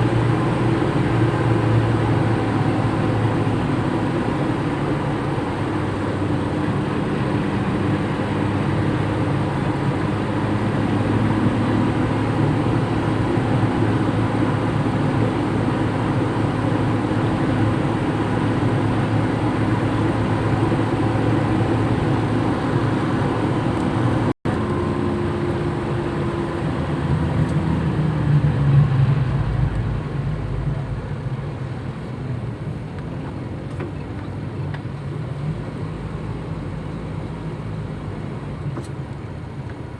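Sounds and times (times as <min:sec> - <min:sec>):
car engine driving: 0:00.0 - 0:39.9
road noise: 0:00.0 - 0:39.9
loud low rumble: 0:26.8 - 0:31.7.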